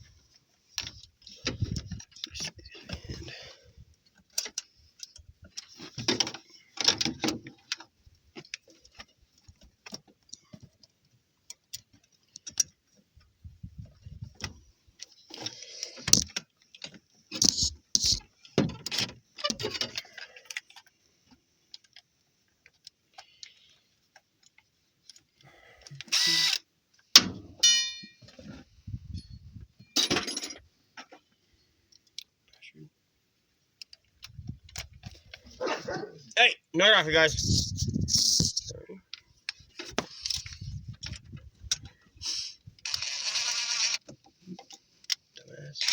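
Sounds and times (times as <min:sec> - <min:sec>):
metal tools clinking: 0:27.6 - 0:28.2, 0:29.9 - 0:30.6.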